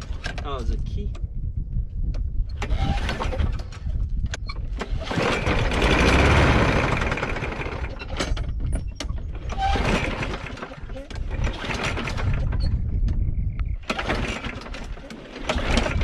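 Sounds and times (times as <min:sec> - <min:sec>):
lawnmower engine cranking: 0:02.6 - 0:03.9, 0:04.6 - 0:12.8, 0:13.8 - 0:16.0.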